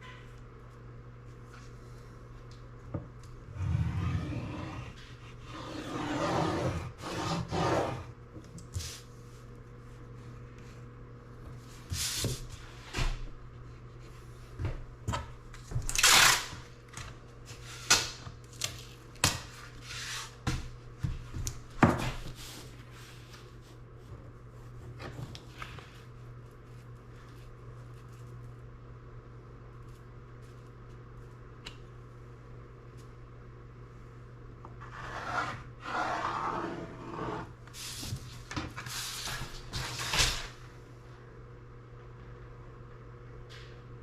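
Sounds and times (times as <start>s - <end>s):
tape rubbing and scraping: 3.7s - 8.1s, 16.0s - 16.6s.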